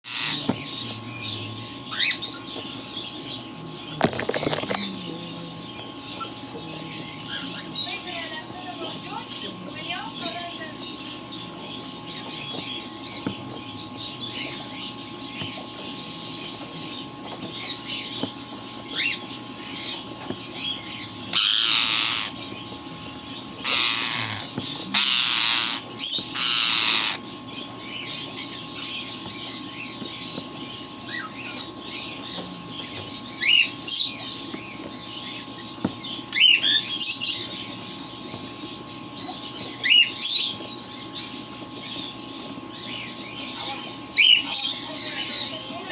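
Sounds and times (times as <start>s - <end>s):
bird chirping: 0.1s - 45.9s
bird squawking harshly: 23.6s - 27.3s.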